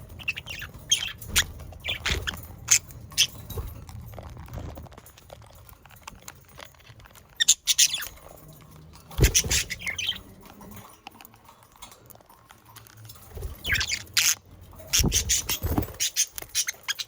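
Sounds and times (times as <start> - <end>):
budgerigars squawking and chattering: 0.0 - 3.4, 7.4 - 8.2, 9.2 - 10.3, 13.6 - 17.0.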